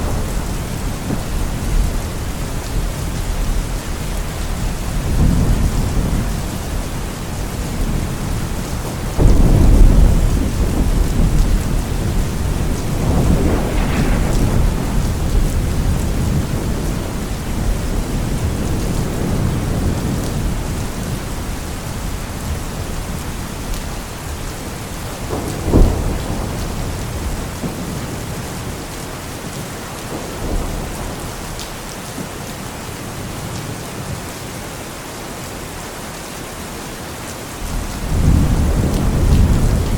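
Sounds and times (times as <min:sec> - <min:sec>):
steady rain: 0:00.0 - 0:39.9
rolling thunder: 0:07.4 - 0:21.4, 0:25.0 - 0:28.8, 0:37.6 - 0:39.9
sharp thunderclap: 0:09.2 - 0:21.1, 0:37.6 - 0:39.9.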